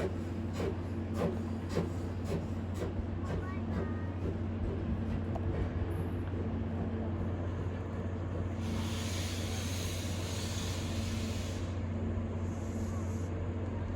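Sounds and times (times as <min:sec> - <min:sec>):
steam locomotive humming: 0:00.0 - 0:13.9
high hiss of escaping steam: 0:08.6 - 0:11.8.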